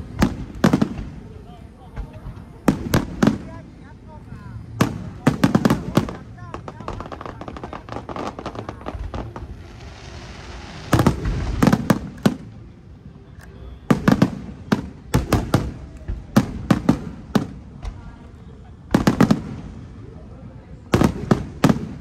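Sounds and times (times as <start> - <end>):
heavy firework booms: 0.0 - 3.8, 4.6 - 12.6, 13.8 - 18.1, 18.8 - 20.1, 20.9 - 22.0
firework bangs and crackles: 0.0 - 22.0
rushing hiss: 4.8 - 12.5.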